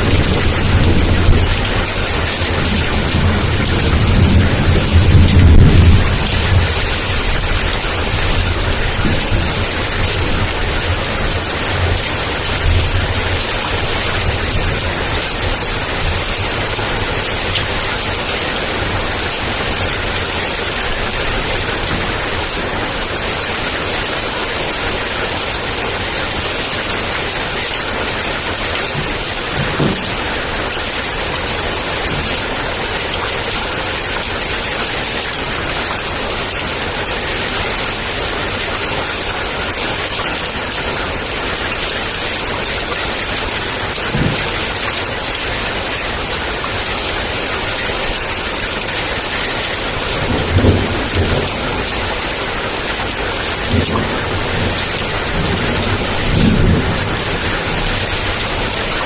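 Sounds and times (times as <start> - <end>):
low thunder rumbles: 0.0 - 25.2, 49.9 - 58.9
heavy rain: 0.0 - 59.0.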